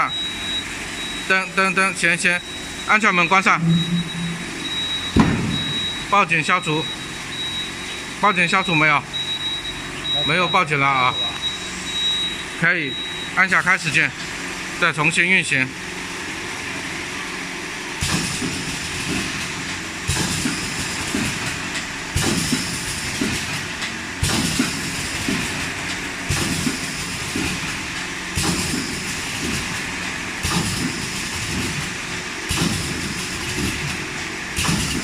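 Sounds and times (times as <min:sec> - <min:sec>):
machine humming: 0:02.4 - 0:06.2.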